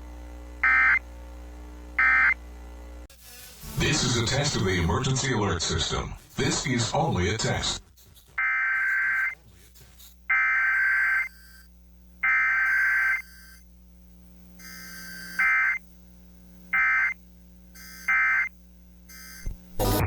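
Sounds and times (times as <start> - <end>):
short data bursts: 3.3 - 13.8, 14.6 - 16.0, 16.6 - 20.0
screeching digital data tone bursts: 3.4 - 5.7, 6.3 - 9.4, 10.0 - 13.7, 14.6 - 15.9, 17.8 - 20.0.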